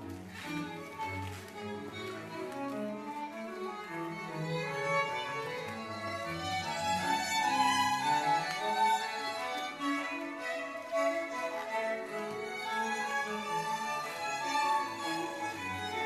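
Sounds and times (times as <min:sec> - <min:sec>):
string quartet playing: 0:00.0 - 0:16.0
high violin line: 0:00.3 - 0:16.0.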